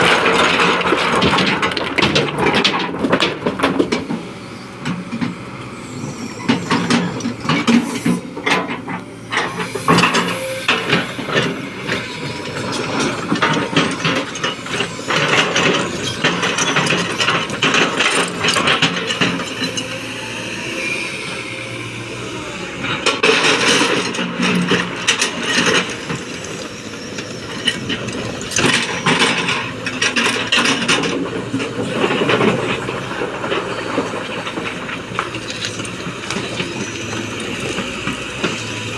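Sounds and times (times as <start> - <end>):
excavator diesel engine: 0.0 - 38.9
hydraulic whine: 3.8 - 30.9.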